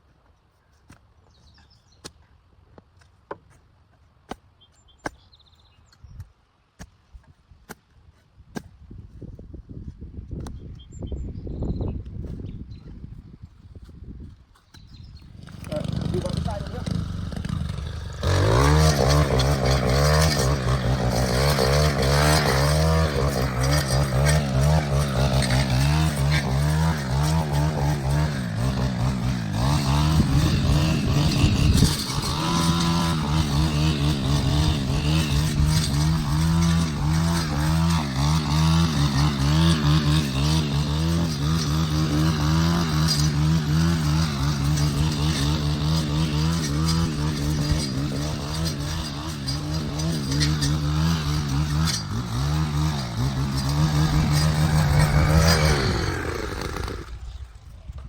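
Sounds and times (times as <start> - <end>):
engine running: 15.3 - 58.0.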